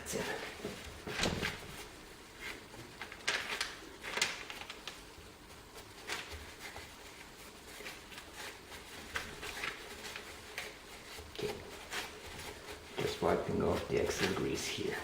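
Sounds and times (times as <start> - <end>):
rustles and light clicks of parts: 0.0 - 15.0.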